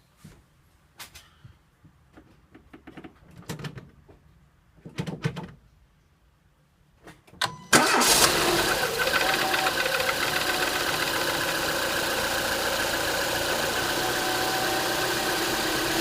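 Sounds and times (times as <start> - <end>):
car engine starting and running: 7.7 - 16.0.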